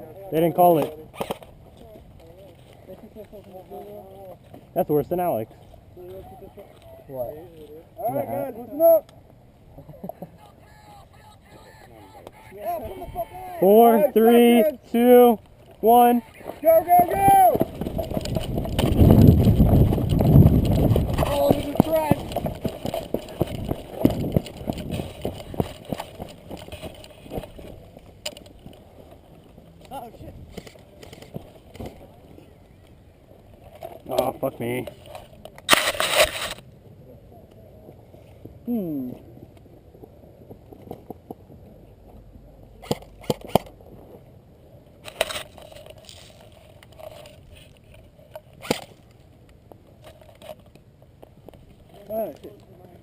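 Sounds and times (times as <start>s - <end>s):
running footsteps: 15.4s - 29.9s.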